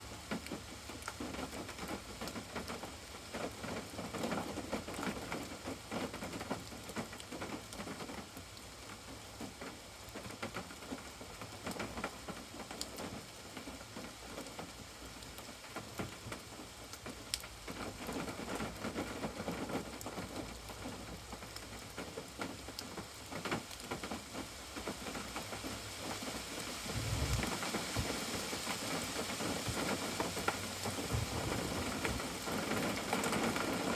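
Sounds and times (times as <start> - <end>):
steady rain falling: 0.0 - 33.9
raindrops ticking: 0.2 - 33.9
low rumble: 26.8 - 28.2.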